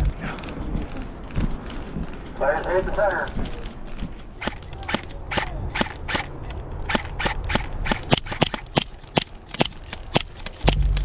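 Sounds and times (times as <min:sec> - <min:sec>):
airsoft gun shots: 0:04.4 - 0:10.9.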